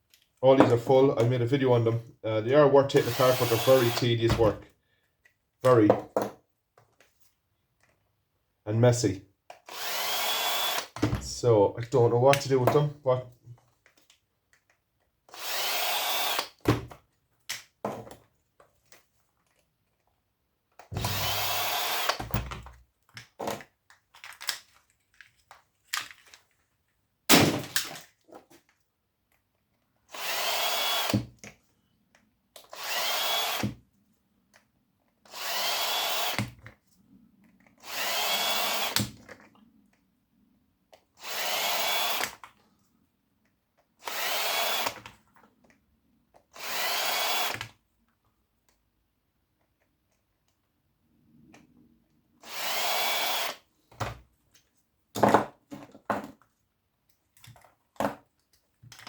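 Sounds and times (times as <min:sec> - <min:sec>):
cordless drill whirring: 0:02.9 - 0:04.3, 0:09.6 - 0:11.1, 0:15.3 - 0:16.6, 0:20.9 - 0:22.5, 0:30.1 - 0:31.4, 0:32.6 - 0:33.8, 0:35.2 - 0:36.6, 0:37.7 - 0:39.2, 0:41.2 - 0:42.5, 0:44.0 - 0:45.1, 0:46.5 - 0:47.7, 0:52.4 - 0:53.7.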